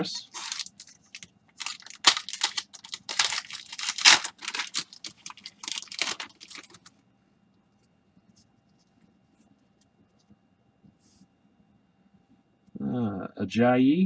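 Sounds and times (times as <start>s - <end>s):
foil wrapper tearing and crinkling: 0.0s - 6.9s.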